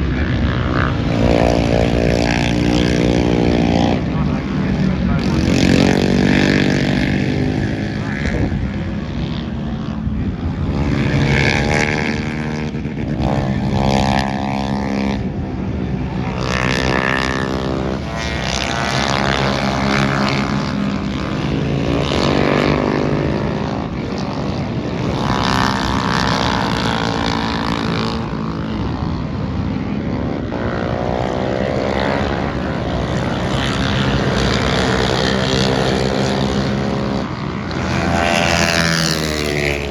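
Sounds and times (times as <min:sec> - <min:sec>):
engine running hard: 0:00.0 - 0:39.9.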